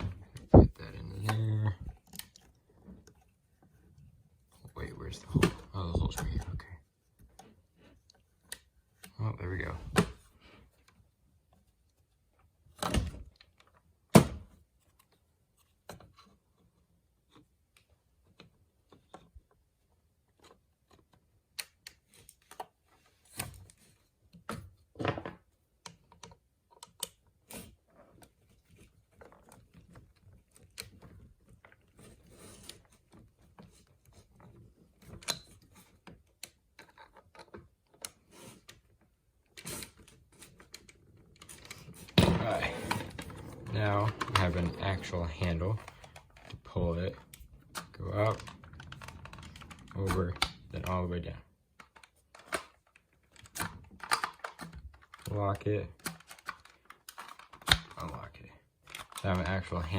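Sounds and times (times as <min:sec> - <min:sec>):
clicks and short rattles: 0:41.4 - 0:51.0.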